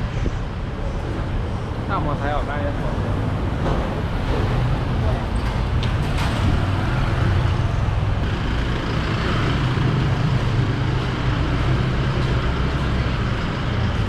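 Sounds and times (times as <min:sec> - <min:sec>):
low engine rumble of traffic: 0:00.0 - 0:14.0.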